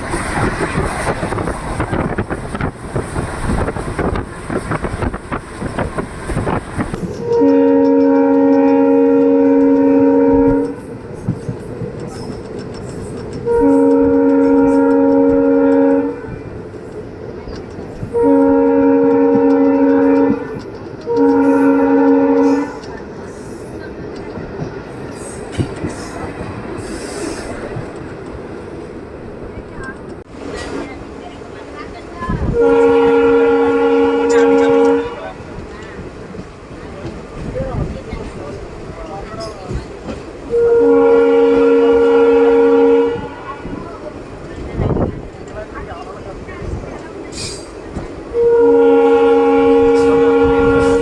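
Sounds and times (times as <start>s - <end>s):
train rattling on rails: 0.0s - 51.0s
locomotive horn blasts: 7.1s - 10.8s, 13.4s - 16.3s, 18.1s - 22.8s, 32.4s - 35.4s, 40.5s - 43.8s, 48.3s - 51.0s.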